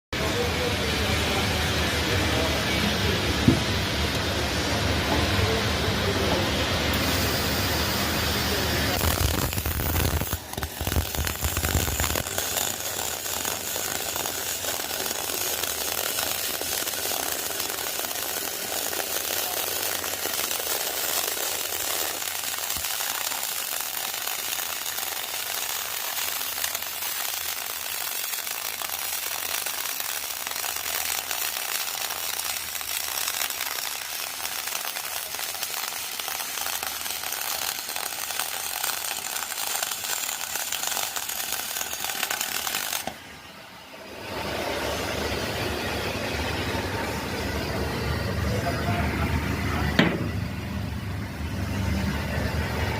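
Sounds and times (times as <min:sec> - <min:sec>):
welding arc hissing and crackling: 0:06.9 - 0:43.3.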